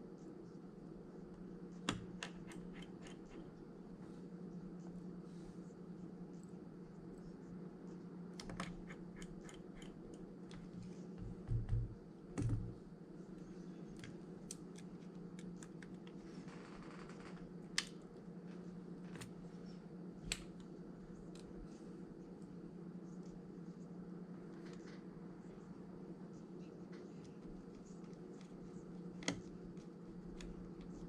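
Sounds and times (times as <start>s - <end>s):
steady electrical hum: 0.0s - 31.0s
small tools clicking on phone parts: 8.4s - 10.3s.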